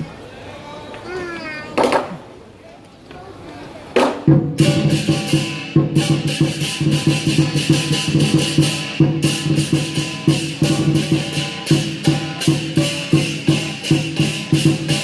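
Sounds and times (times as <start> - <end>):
drum beaten in fast rhythm: 4.0 - 15.0
crashing cymbals: 4.6 - 15.0.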